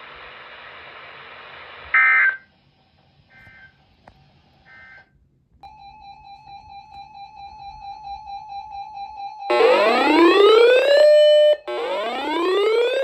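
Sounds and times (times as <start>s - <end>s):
radio hiss: 0.0s - 5.1s.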